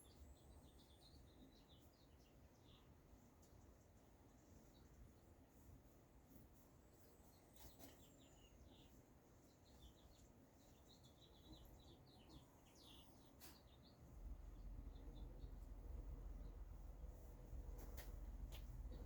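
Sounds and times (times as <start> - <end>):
faint high bird chirps: 0.0 - 3.7, 6.9 - 16.8.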